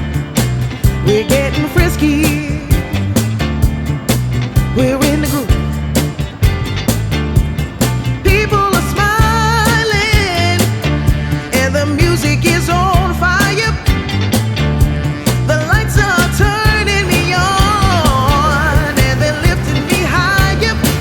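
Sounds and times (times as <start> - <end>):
beat and bass line: 0.0 - 21.0
person singing: 1.0 - 3.0, 4.7 - 5.7, 8.3 - 14.3, 15.2 - 21.0.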